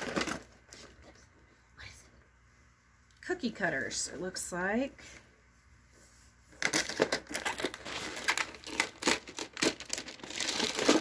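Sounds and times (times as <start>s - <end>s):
packaging crinkling and tearing: 0.0s - 0.9s, 6.6s - 11.0s.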